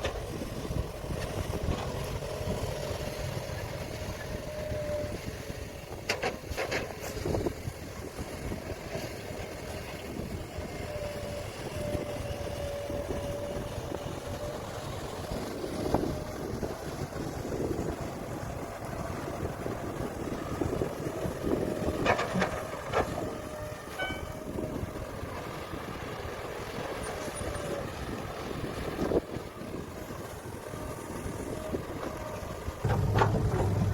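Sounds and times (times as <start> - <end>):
diesel machinery engine rumble: 0.0 - 33.9
engine whine: 0.0 - 33.9
clanks of rock or steel: 32.8 - 33.9.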